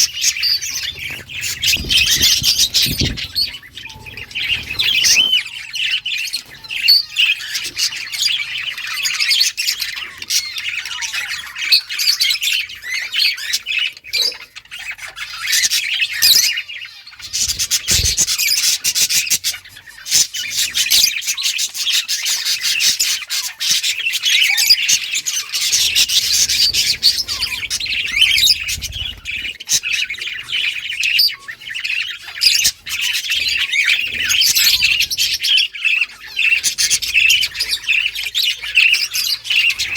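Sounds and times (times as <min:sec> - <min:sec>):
budgerigars chirping and squawking: 0:00.0 - 0:39.9.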